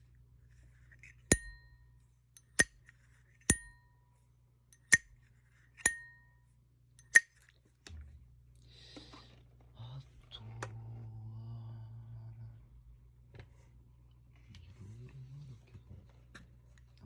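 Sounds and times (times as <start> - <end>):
lighter lid clicking and ringing: 1.3 - 1.6, 3.5 - 3.8, 5.8 - 6.2, 7.0 - 7.3.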